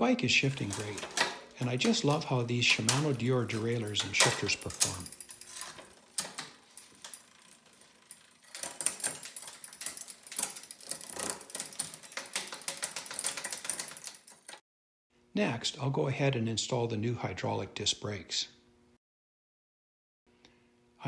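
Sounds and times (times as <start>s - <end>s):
bike chain and gears ticking: 0.2s - 14.6s.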